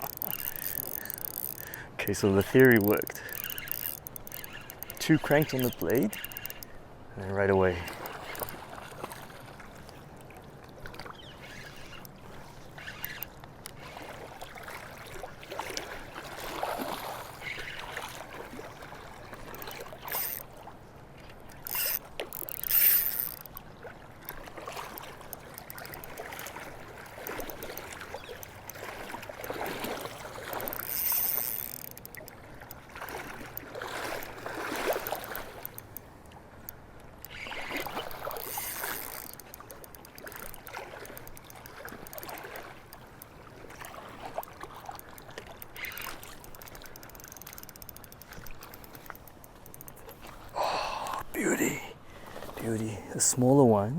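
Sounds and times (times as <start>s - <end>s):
fish splashing in water: 10.7s - 20.8s, 21.4s - 36.0s, 37.2s - 51.2s.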